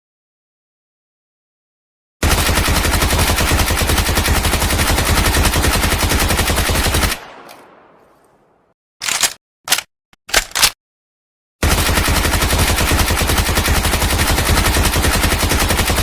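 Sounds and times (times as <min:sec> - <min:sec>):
submachine gun full-auto burst: 0:02.2 - 0:08.0, 0:11.6 - 0:16.0.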